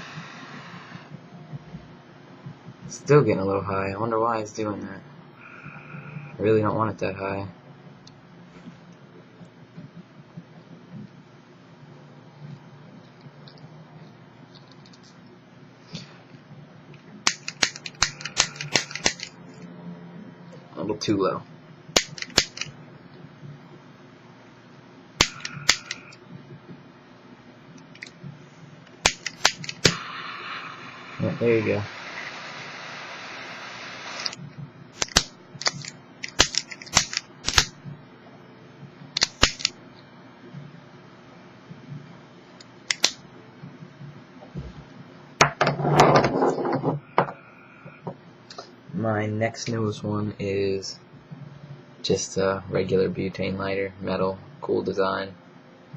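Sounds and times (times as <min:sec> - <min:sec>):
torch lighter flame hissing: 0:00.0 - 0:01.2, 0:25.2 - 0:26.2, 0:29.0 - 0:34.4
torch lighter igniter clicking: 0:17.3 - 0:19.3, 0:25.2 - 0:26.1, 0:29.0 - 0:30.3, 0:34.1 - 0:34.4, 0:35.0 - 0:37.7, 0:42.9 - 0:43.2
lighter clicking: 0:25.2 - 0:26.1.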